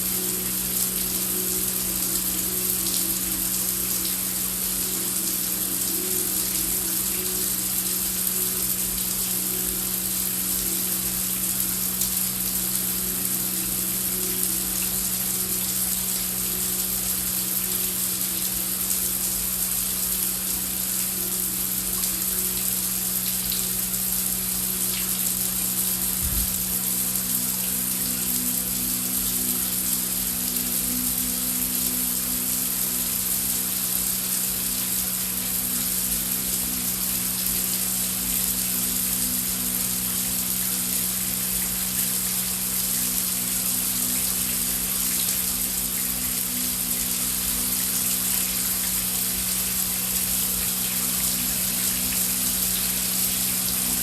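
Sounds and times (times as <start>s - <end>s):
low steady hum: 21.9s - 54.0s.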